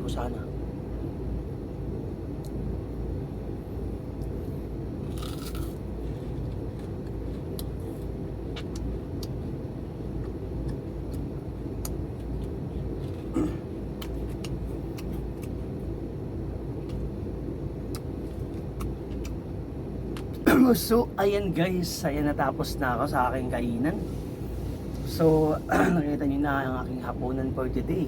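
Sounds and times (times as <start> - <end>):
crunchy food chewing: 5.0 - 15.8, 17.9 - 19.4.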